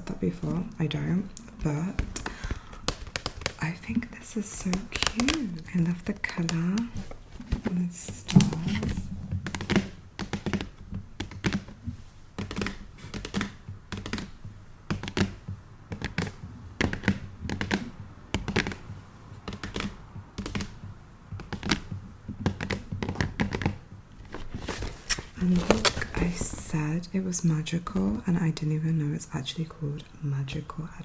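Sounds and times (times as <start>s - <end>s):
light tapping on cardboard box: 1.9s - 27.0s.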